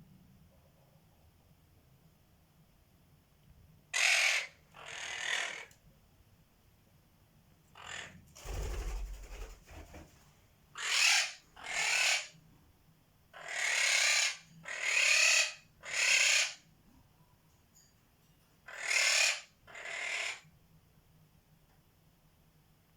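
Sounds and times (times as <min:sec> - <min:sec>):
parrot screeching: 0:04.0 - 0:05.7, 0:07.8 - 0:08.1, 0:10.8 - 0:12.3, 0:13.4 - 0:16.6, 0:18.7 - 0:20.4.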